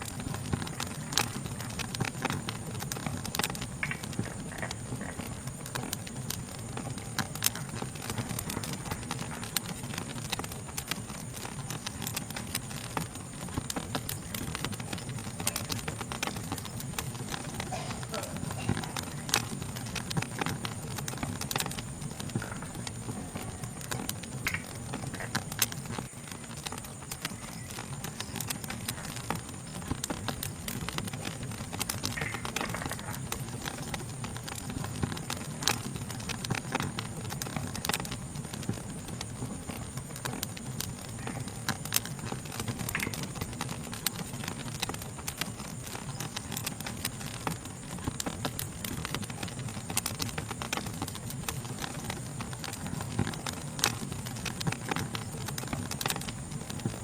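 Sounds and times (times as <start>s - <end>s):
fire crackling and popping: 0.0s - 57.0s
insect chorus: 0.0s - 57.0s.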